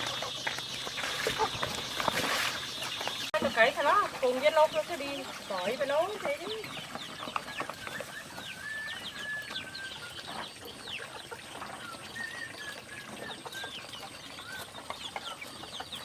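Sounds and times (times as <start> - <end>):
chickens chirping and peeping: 0.0 - 16.0
whistled chicken calls: 7.8 - 15.4.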